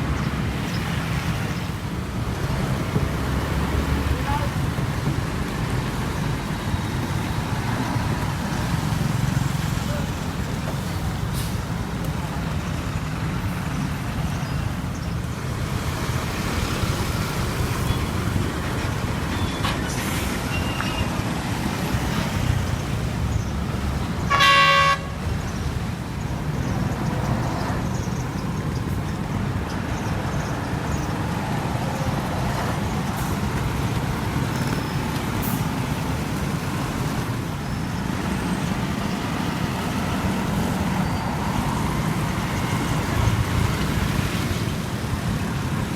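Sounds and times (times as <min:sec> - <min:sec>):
street traffic: 0:00.0 - 0:45.9
truck engines running: 0:00.0 - 0:45.9
vehicle horn toot: 0:24.3 - 0:25.2.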